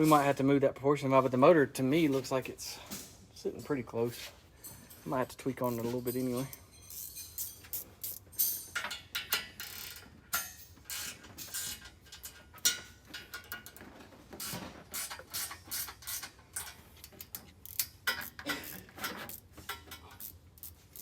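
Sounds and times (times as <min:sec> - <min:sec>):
metal tools clinking: 0:04.6 - 0:21.0
hand ratchet clicking: 0:05.6 - 0:13.8, 0:14.4 - 0:21.0.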